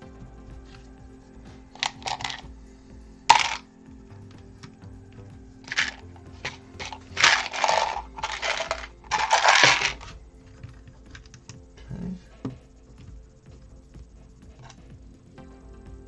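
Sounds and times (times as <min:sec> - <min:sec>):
plastic bricks rattling: 0:01.8 - 0:02.5, 0:03.3 - 0:03.7, 0:05.7 - 0:11.6.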